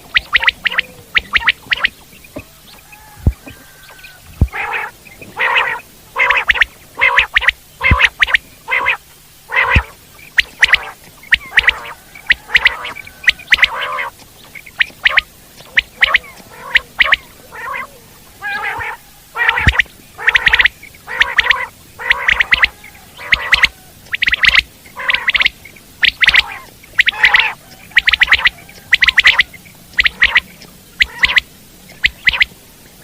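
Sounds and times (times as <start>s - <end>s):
quail calling: 0.0s - 33.0s
sharp clicks: 9.7s - 17.3s, 18.8s - 22.7s, 23.3s - 32.5s.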